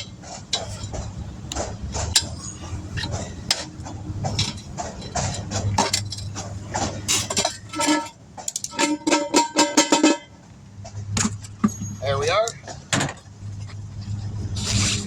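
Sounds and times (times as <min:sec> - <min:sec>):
metal tools clinking: 0:00.0 - 0:10.3.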